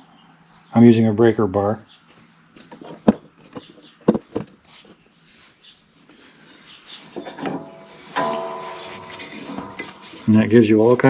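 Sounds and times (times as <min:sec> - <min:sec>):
sharp metal knock: 0:07.3 - 0:11.0.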